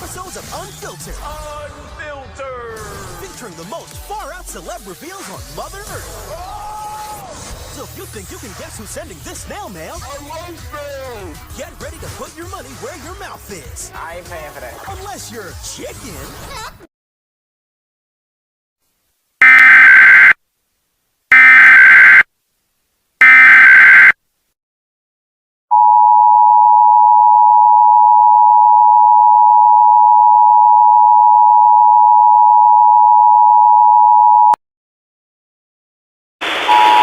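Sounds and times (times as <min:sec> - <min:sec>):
data burst chirps: 0:19.4 - 0:20.4, 0:21.3 - 0:22.2, 0:23.2 - 0:24.2, 0:36.7 - 0:37.0
two-tone attention signal: 0:19.4 - 0:20.4, 0:21.3 - 0:22.2, 0:23.2 - 0:24.1, 0:36.7 - 0:37.0.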